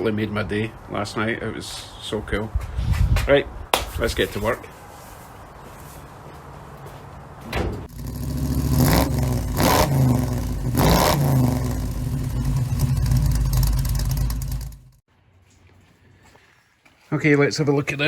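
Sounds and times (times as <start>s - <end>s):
car engine cranking: 7.9s - 15.0s
car engine revving and running: 7.9s - 15.0s.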